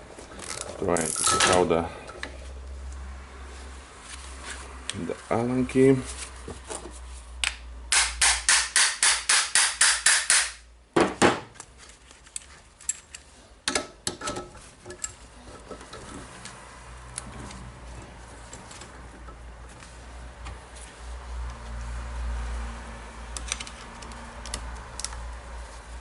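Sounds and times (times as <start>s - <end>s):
hammer striking metal: 7.9s - 10.6s.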